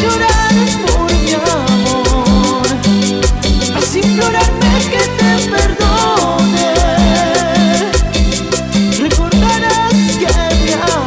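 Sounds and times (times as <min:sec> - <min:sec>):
kick drum: 0:00.0 - 0:01.3, 0:02.1 - 0:02.5, 0:03.2 - 0:03.7, 0:04.4 - 0:04.8, 0:05.6 - 0:06.1, 0:06.8 - 0:07.2, 0:08.0 - 0:08.4, 0:09.1 - 0:09.5, 0:10.3 - 0:10.7
live latin dance band: 0:00.0 - 0:11.0
shaker or cymbal strokes: 0:00.0 - 0:11.0
wavering lead melody: 0:00.0 - 0:11.0.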